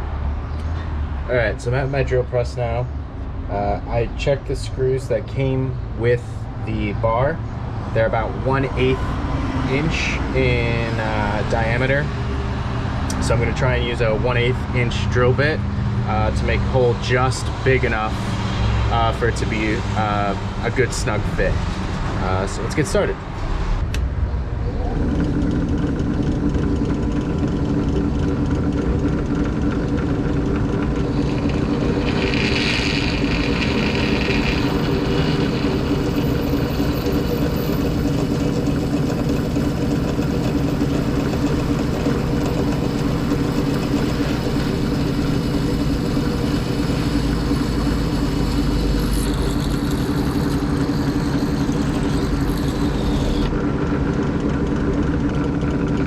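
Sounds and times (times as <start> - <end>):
drill press motor hum: 24.9 - 56.0
drill bit drilling metal: 28.1 - 53.5.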